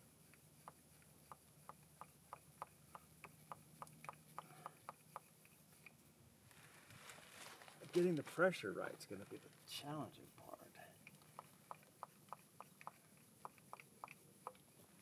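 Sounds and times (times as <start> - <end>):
hand air pump clicking: 11.0 - 15.0.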